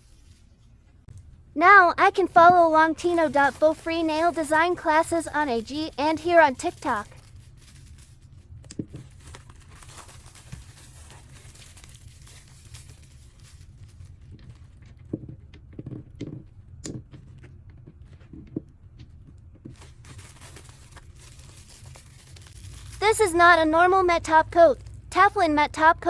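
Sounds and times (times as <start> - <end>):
packaging crinkling: 3.0 - 14.8, 19.8 - 23.3.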